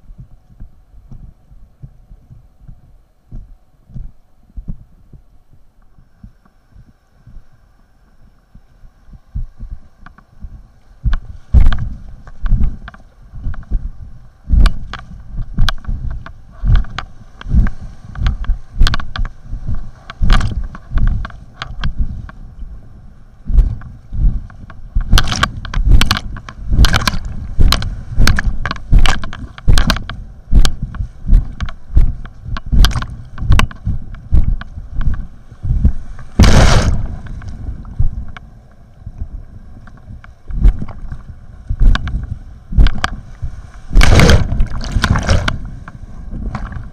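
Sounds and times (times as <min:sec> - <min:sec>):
water rushing over boat: 0:06.2 - 0:46.9
paddle strokes splashing: 0:40.6 - 0:46.9.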